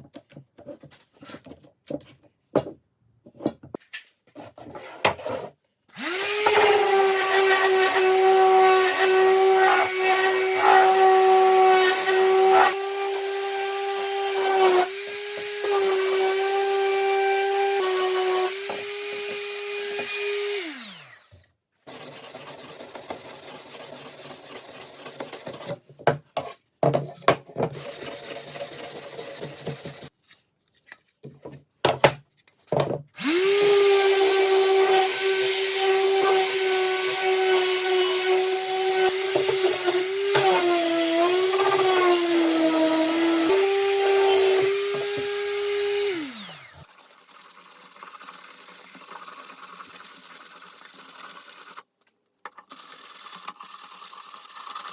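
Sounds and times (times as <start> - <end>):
power tool motor whining: 5.9 - 21.4, 33.2 - 46.9.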